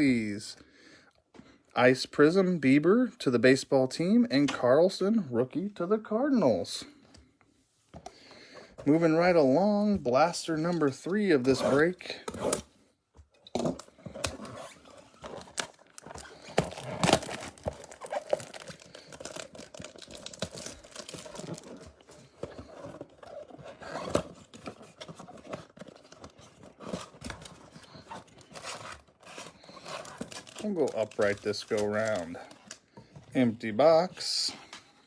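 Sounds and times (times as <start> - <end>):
plastic wrap crinkling and tearing: 13.6 - 32.9.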